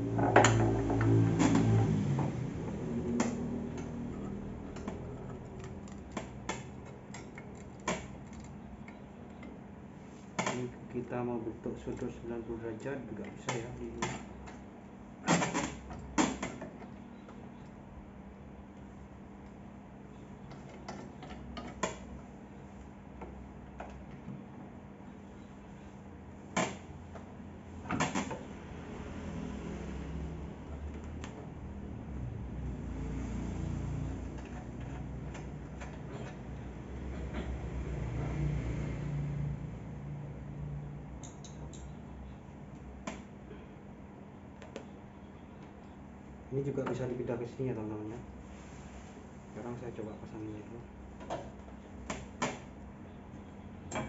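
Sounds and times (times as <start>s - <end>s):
parts clicking and knocking: 0.1s - 9.6s.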